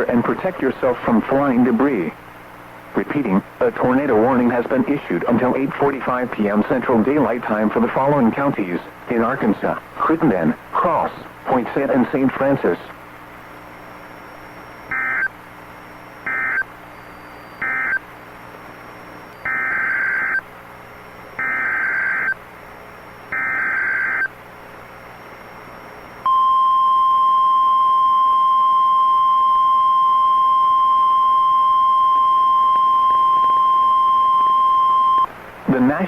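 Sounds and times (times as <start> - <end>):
screechy data bursts: 14.4 - 15.3, 16.2 - 18.1, 19.1 - 20.5, 21.4 - 22.4, 23.3 - 24.4
steady high alarm beep: 14.8 - 15.3, 16.2 - 18.0, 19.3 - 20.4, 21.4 - 22.4, 23.3 - 24.3, 26.2 - 35.3.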